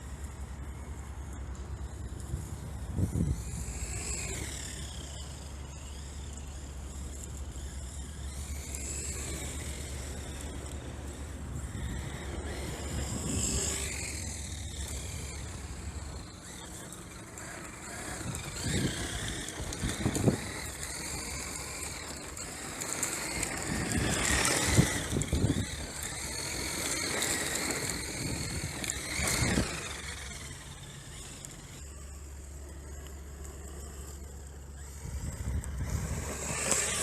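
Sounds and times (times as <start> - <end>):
electric motor whining: 0.0 - 37.0
tyre noise on pavement: 0.0 - 37.0.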